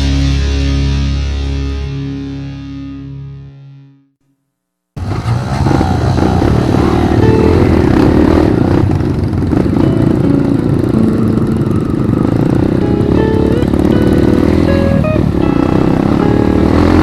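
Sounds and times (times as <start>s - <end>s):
motorcycle engine running: 5.5s - 17.0s
music playing: 6.4s - 8.8s, 9.6s - 17.0s.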